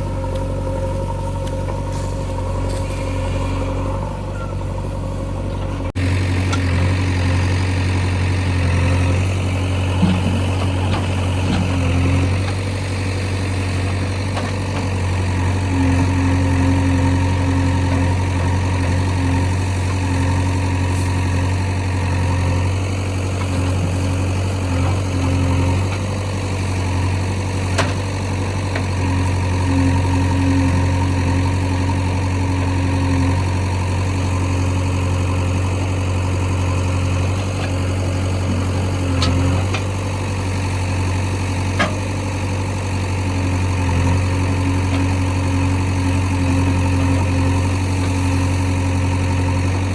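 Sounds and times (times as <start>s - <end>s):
higher hum: 0.0s - 6.2s
heavy diesel engine running: 0.0s - 49.9s.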